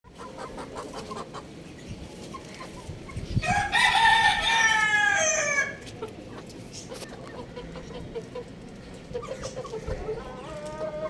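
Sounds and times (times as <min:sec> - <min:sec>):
rooster crowing: 0:03.4 - 0:05.8.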